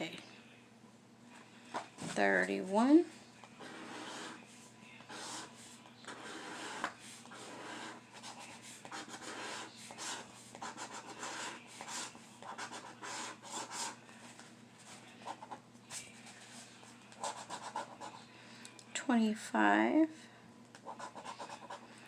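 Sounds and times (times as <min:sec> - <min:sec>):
lottery ticket being scratched: 0:05.1 - 0:14.0, 0:17.1 - 0:18.1, 0:20.8 - 0:21.9.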